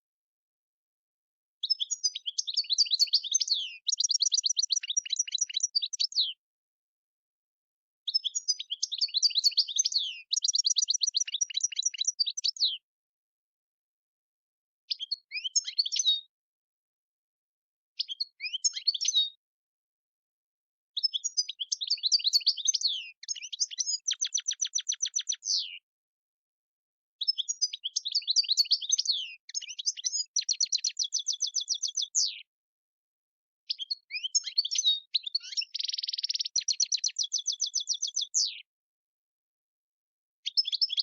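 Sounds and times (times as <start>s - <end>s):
goldfinch singing: 1.6s - 6.4s, 8.1s - 12.8s, 14.9s - 16.3s, 21.0s - 25.8s, 27.2s - 32.4s, 33.7s - 38.7s, 40.4s - 41.0s.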